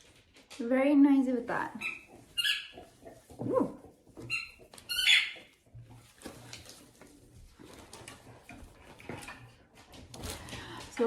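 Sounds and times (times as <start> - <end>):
squeaky dog toy squeaking: 1.8 - 2.9, 4.2 - 5.5
packaging rustling: 5.5 - 8.8.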